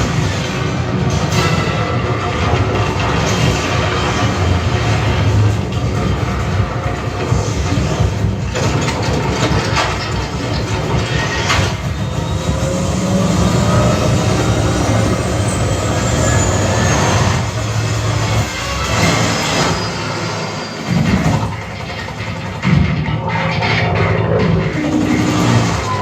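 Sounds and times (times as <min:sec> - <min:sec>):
passing train din: 0:10.3 - 0:21.4
heavy low bass: 0:10.4 - 0:18.6
gliding whistle-like tone: 0:11.5 - 0:20.9.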